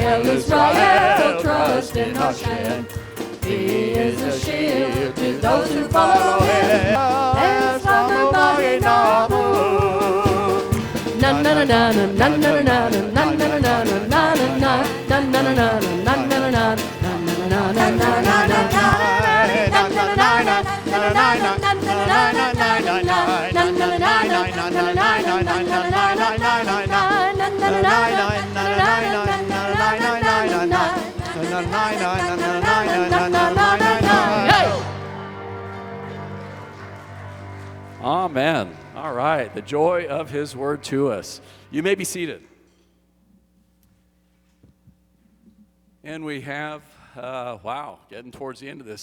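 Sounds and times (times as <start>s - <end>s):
steady drum beat: 0.0s - 42.3s
congregation singing praise song: 0.0s - 42.4s.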